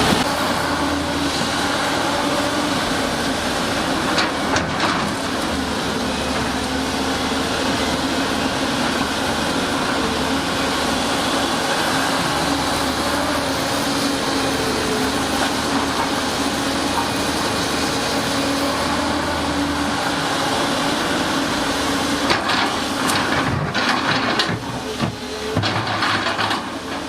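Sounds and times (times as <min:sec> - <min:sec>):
heavy diesel engine running: 0:00.0 - 0:27.0.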